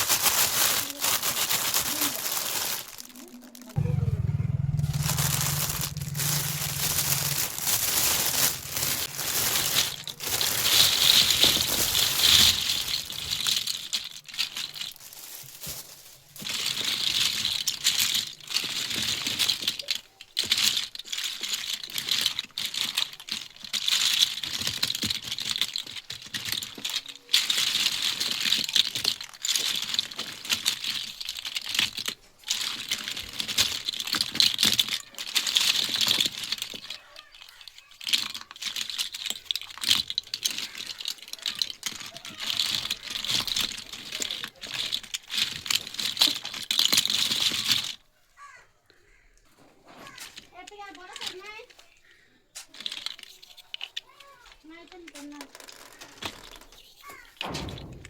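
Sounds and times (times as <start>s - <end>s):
plastic packaging crinkling: 0.0s - 48.1s, 50.0s - 58.0s
low hum: 3.8s - 9.8s.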